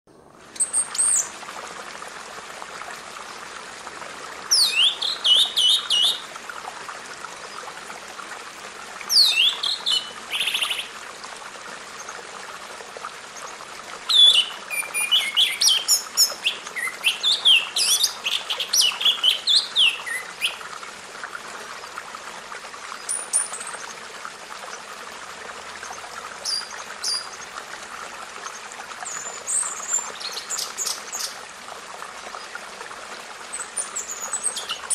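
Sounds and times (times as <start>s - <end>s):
birds singing: 4.5s - 6.2s, 9.1s - 10.9s, 14.1s - 20.6s, 29.0s - 31.4s, 33.6s - 34.9s.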